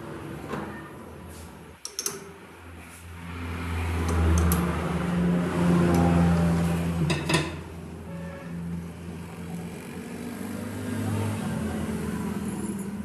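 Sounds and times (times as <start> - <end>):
sharp metallic clicks: 1.8 - 2.3, 4.0 - 4.7.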